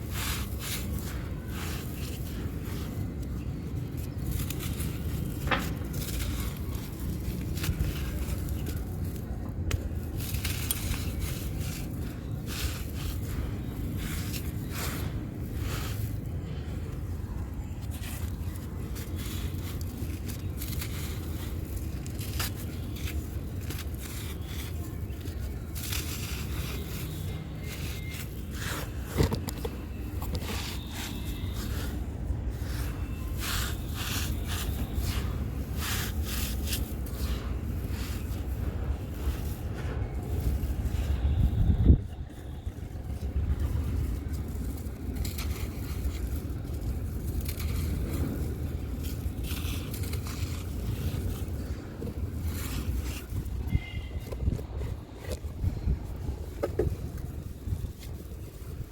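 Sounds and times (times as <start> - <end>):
dry block being crushed: 0.0 - 41.8.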